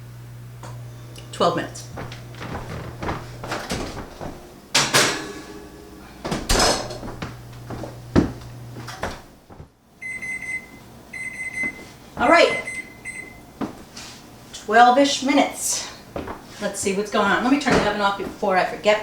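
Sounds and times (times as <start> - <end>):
low steady hum: 0.0 - 13.8
kitchen knocks and clinks: 2.0 - 5.6, 6.2 - 9.2
electronic timer beeping: 10.0 - 11.8, 12.5 - 13.4.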